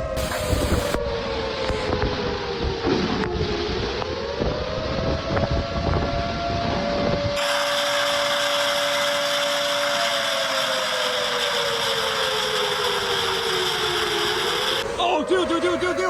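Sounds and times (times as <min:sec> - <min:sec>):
wind buffeting microphone: 0:00.0 - 0:07.6
tornado warning siren wailing: 0:00.0 - 0:16.0.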